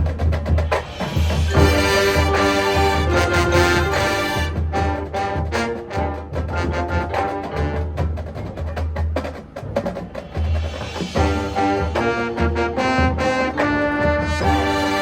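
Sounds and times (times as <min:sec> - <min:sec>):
marching band drums and percussion: 0:00.0 - 0:15.0
brass section chords: 0:01.5 - 0:08.1, 0:11.2 - 0:15.0.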